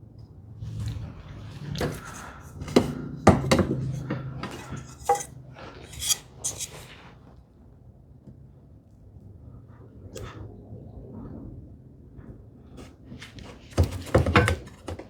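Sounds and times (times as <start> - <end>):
hand tools and wood knocking: 0.8 - 6.9, 13.7 - 15.0.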